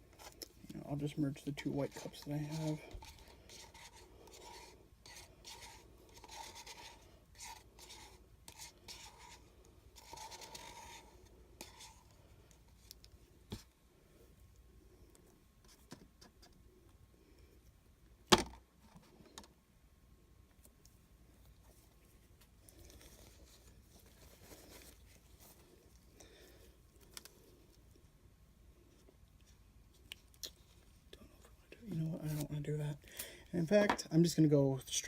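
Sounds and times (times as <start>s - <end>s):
paint scraping in a cup: 1.0s - 12.2s.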